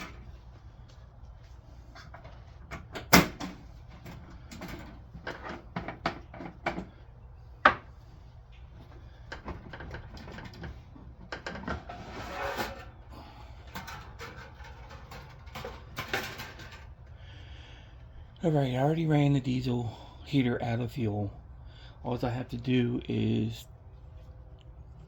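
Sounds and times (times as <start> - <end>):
low steady hum: 0.0 - 25.0
rustling scraping noises: 11.5 - 13.1.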